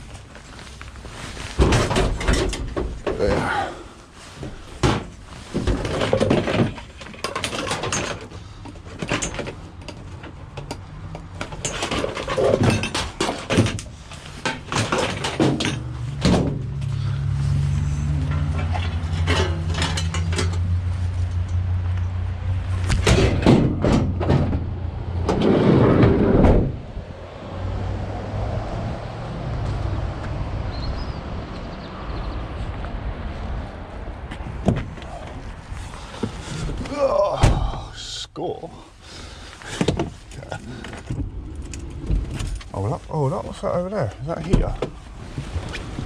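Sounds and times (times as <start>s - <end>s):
van engine humming: 0.0s - 25.4s
knocks and clatter: 1.4s - 3.4s, 4.4s - 16.8s, 18.2s - 22.1s, 22.7s - 26.8s.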